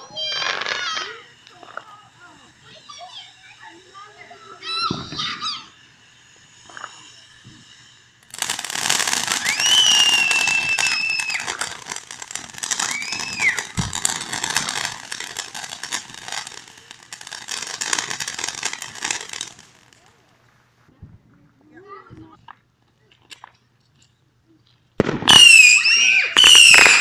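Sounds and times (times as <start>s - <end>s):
fireworks crackling barrage: 0.0s - 20.9s, 25.0s - 27.0s
shrill firework whistle: 4.4s - 19.9s, 25.1s - 27.0s.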